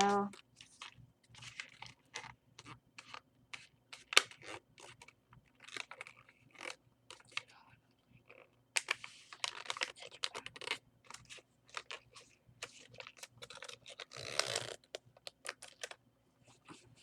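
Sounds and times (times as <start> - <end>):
paper crackling and rustling: 8.3 - 16.0.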